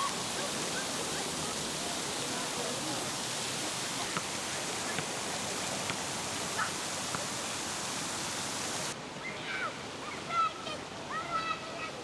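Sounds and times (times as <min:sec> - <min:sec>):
fountain water splashing: 0:00.0 - 0:09.0.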